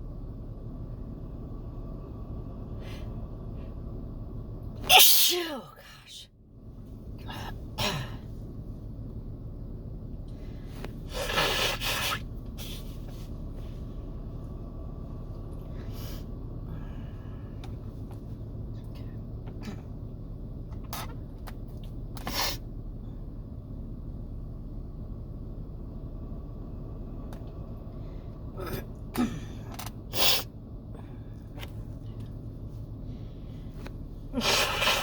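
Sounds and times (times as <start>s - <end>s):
faint steady hum: 0.0s - 35.0s
low background rumble: 0.0s - 35.0s
person sneezing: 4.8s - 5.6s, 28.6s - 29.6s, 34.4s - 35.0s.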